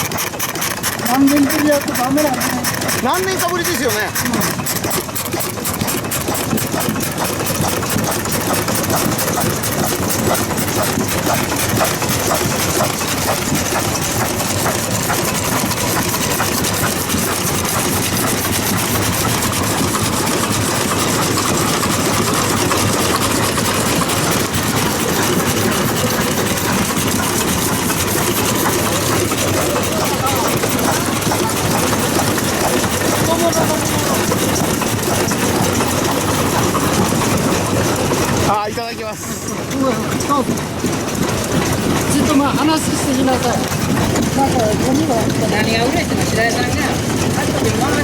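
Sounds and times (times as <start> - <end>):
old stationary engine running: 0.0 - 48.0.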